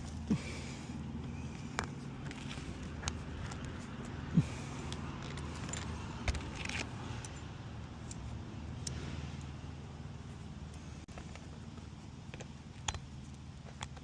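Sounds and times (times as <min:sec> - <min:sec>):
clicks and rustles on shingles: 0:00.0 - 0:08.3, 0:10.7 - 0:14.0.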